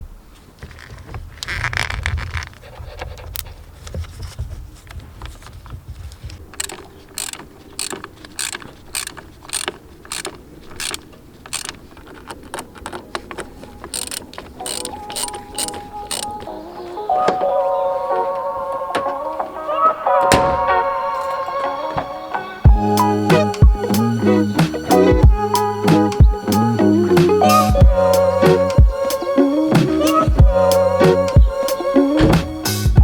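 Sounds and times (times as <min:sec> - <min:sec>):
hand ratchet clicking: 0:06.6 - 0:16.3.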